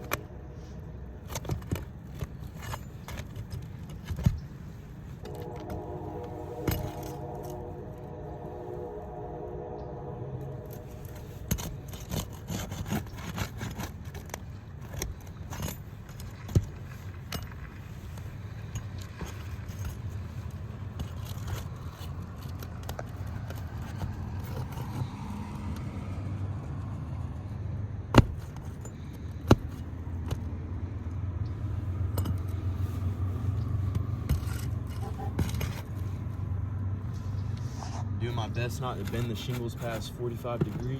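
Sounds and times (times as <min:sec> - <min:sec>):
roof shingles being pried up: 0:00.0 - 0:07.7, 0:10.8 - 0:25.8, 0:28.0 - 0:30.6, 0:31.7 - 0:36.5, 0:38.3 - 0:40.9.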